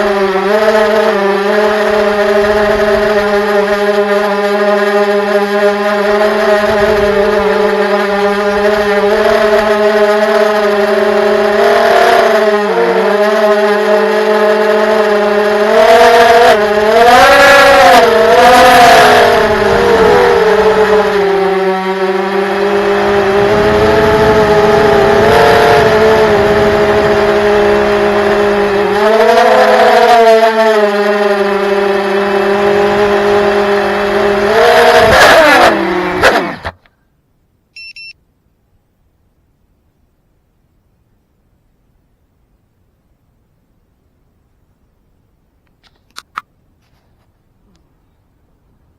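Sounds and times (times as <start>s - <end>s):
drone motors whining: 0.0s - 36.9s
short electronic beep: 37.7s - 38.2s.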